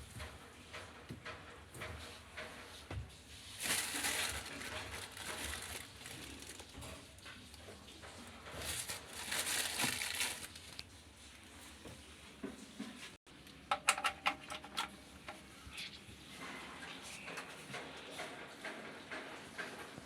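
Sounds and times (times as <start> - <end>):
rustling and handling noises: 0.2 - 13.2.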